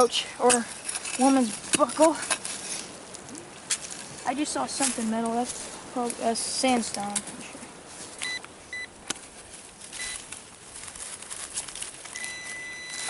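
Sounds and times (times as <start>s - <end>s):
metal detector beeping: 8.2s - 8.9s, 9.9s - 10.2s, 12.1s - 13.0s.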